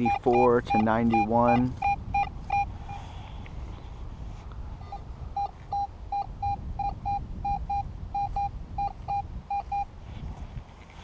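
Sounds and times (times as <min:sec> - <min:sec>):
metal detector beeping: 0:00.0 - 0:03.0, 0:04.9 - 0:09.9.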